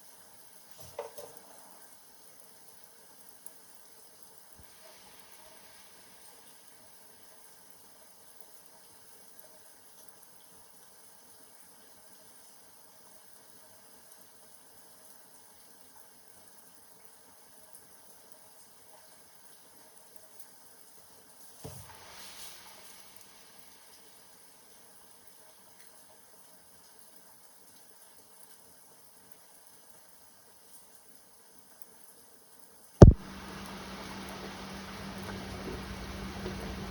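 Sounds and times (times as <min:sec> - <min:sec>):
knock: 0:00.8 - 0:01.4, 0:33.0 - 0:33.2
water rush: 0:04.6 - 0:06.8, 0:33.0 - 0:36.9
steady water sound: 0:04.6 - 0:07.9, 0:21.6 - 0:24.6, 0:33.0 - 0:36.9.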